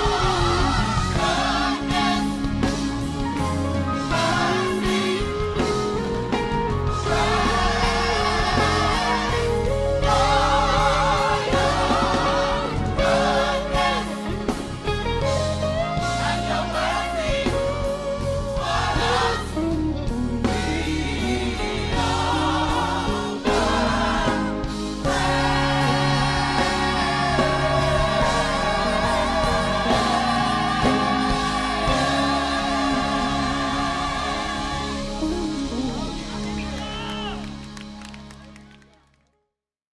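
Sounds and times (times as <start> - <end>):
gospel choir singing: 0.0 - 36.5
steady bass: 0.0 - 38.2.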